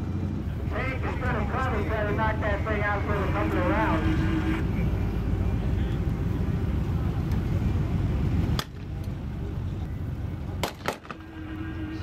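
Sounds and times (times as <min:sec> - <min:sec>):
low vehicle rumble: 0:00.0 - 0:12.0
sharp crack: 0:08.5 - 0:09.0, 0:10.6 - 0:11.3.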